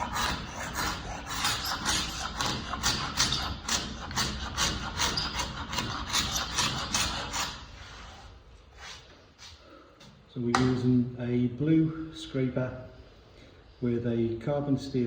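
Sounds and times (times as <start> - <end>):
hand scraper scraping wood: 0.0 - 8.3.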